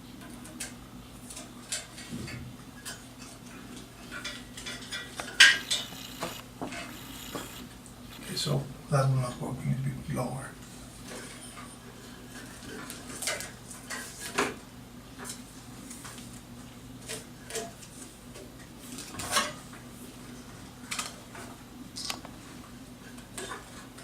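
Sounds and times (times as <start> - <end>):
steady low hum: 4.2 - 11.2.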